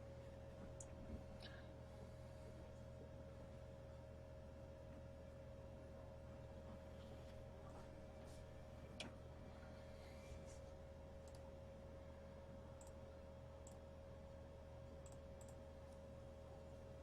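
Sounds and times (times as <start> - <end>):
steady electrical hum: 0.0 - 17.0
faint short clicks: 11.2 - 11.5.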